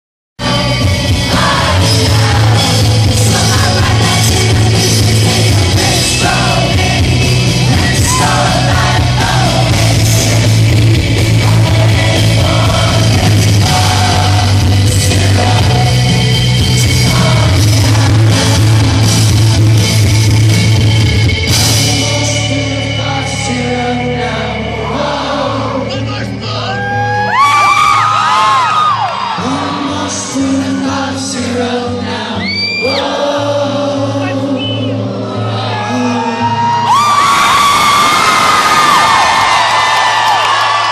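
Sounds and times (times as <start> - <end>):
lead singer singing: 0.4 - 20.6, 21.4 - 27.1, 29.3 - 37.3
live rock band playing: 0.4 - 26.4
heavy bass: 0.4 - 27.5.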